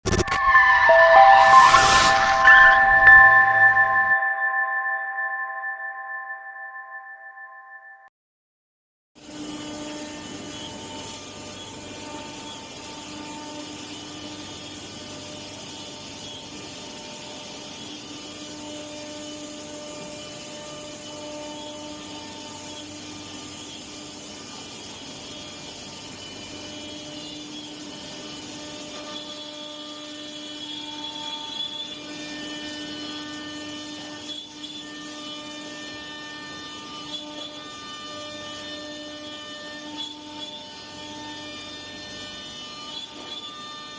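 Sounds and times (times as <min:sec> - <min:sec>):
router machine hum and whine: 0:09.2 - 0:43.9.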